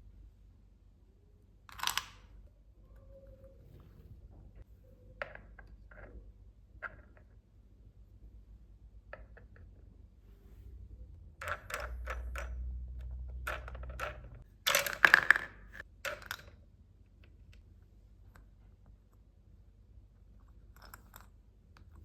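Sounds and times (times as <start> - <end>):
low steady rumble: 0.0 - 14.6
plastic toy pieces clattering: 13.4 - 16.6.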